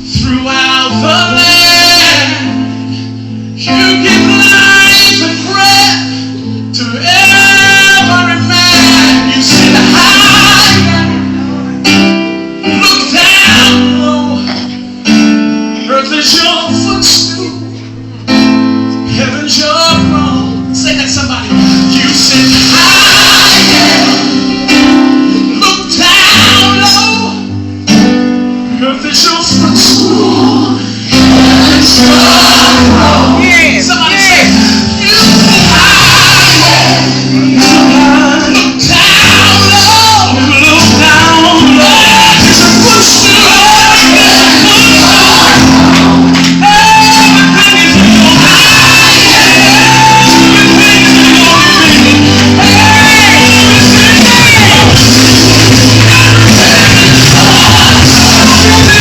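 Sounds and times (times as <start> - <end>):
band accompaniment: 0.0 - 59.0
gospel worship music: 0.0 - 59.0
voices singing long notes: 21.9 - 26.5, 29.7 - 59.0.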